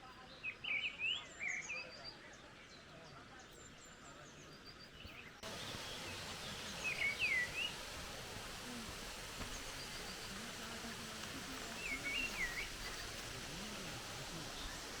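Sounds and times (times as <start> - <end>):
outdoor background noise: 0.0 - 15.0
bird whistling call: 5.4 - 15.0.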